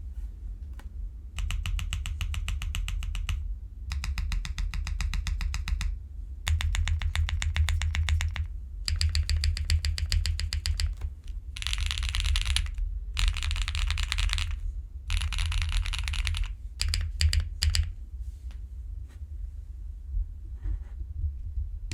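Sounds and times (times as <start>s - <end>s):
mechanical keyboard typing: 1.4s - 17.9s.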